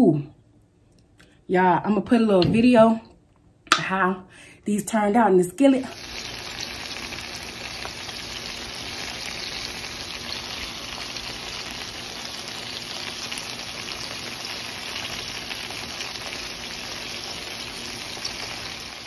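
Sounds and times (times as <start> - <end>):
prawns sizzling in a skillet: 5.9 - 19.0.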